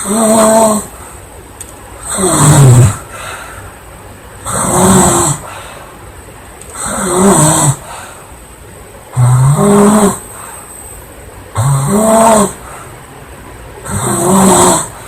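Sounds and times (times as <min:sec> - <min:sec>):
girl snoring loudly: 0:00.0 - 0:00.9, 0:02.0 - 0:03.1, 0:04.4 - 0:05.6, 0:06.8 - 0:08.1, 0:09.1 - 0:10.3, 0:11.6 - 0:12.7, 0:13.8 - 0:15.0.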